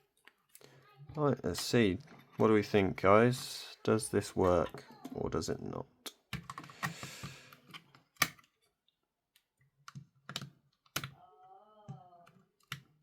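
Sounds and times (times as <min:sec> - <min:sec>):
hard plastic clicks and taps: 0:09.4 - 0:11.2.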